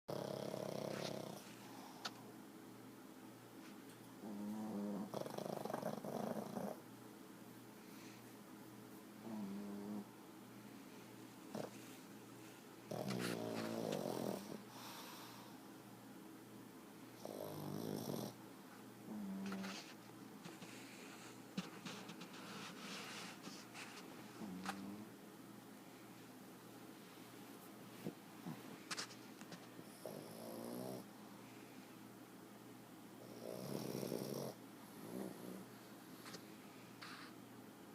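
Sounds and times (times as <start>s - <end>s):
dog snoring: 0.1s - 2.1s, 4.2s - 6.8s, 9.2s - 10.1s, 11.5s - 11.8s, 12.9s - 15.5s, 17.2s - 18.4s, 19.1s - 19.9s, 24.4s - 25.1s, 29.8s - 31.1s, 33.2s - 35.8s.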